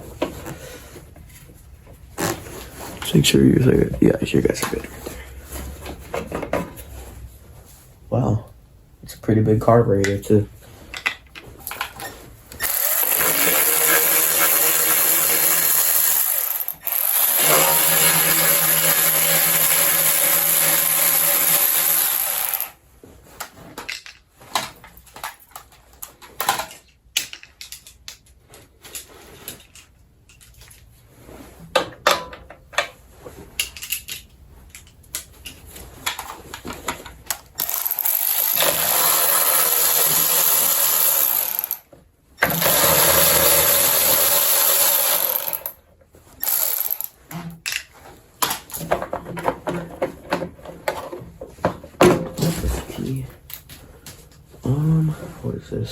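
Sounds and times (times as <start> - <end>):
tools clinking and knocking: 10.9 - 22.7, 33.6 - 45.8
power driver running: 12.6 - 22.8, 37.6 - 41.8, 42.4 - 45.7.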